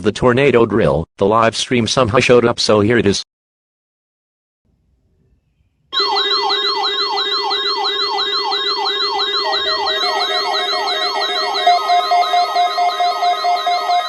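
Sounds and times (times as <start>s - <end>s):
electronic siren sweeps: 6.0s - 14.0s.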